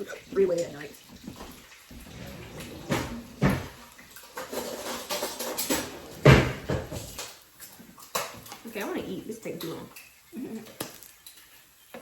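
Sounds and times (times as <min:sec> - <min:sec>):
pans and dishes knocking: 0:02.8 - 0:07.3.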